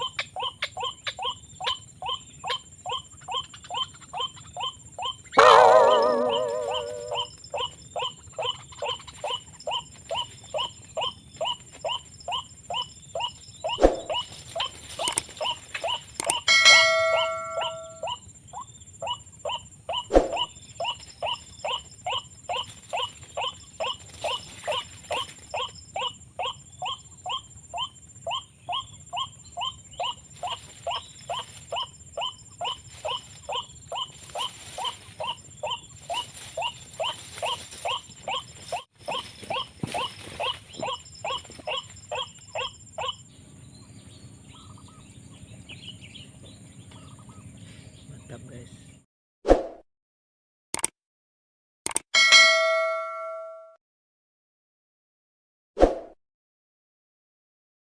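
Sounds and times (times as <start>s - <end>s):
waterhen calling: 5.2s - 7.7s, 12.8s - 18.2s
loud ringing tone: 16.4s - 18.1s, 52.2s - 53.8s.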